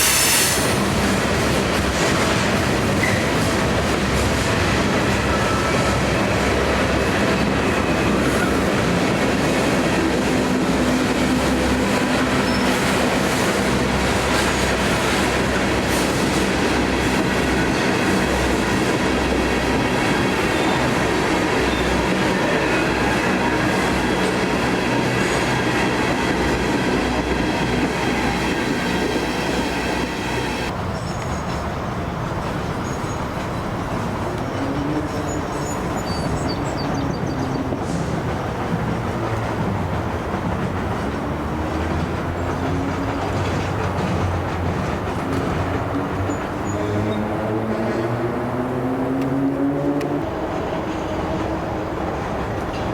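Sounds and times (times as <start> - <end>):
wheels squealing on rail: 0.0 - 1.1, 2.9 - 3.8, 10.6 - 16.5, 19.4 - 38.3, 41.1 - 48.3
train rumbling on track: 0.0 - 52.9.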